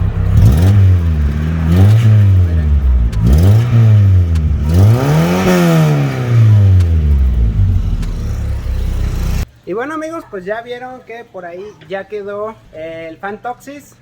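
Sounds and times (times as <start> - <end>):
car engine revving: 0.0 - 9.4.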